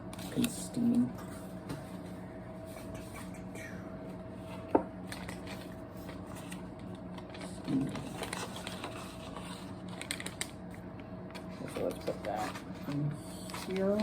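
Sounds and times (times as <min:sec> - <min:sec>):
faint steady hum: 0:00.0 - 0:14.0
plastic packaging crinkling: 0:05.1 - 0:14.0.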